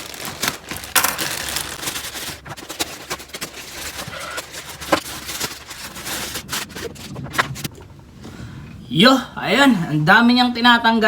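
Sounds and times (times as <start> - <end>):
plastic bags rustling and crinkling: 0.0 - 7.8.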